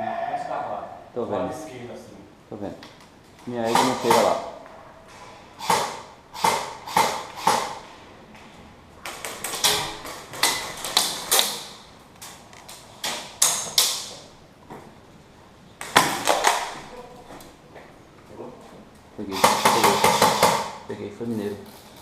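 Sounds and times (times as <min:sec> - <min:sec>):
airsoft guns firing: 0:03.6 - 0:04.5, 0:05.6 - 0:07.8, 0:15.8 - 0:16.8, 0:19.3 - 0:20.9.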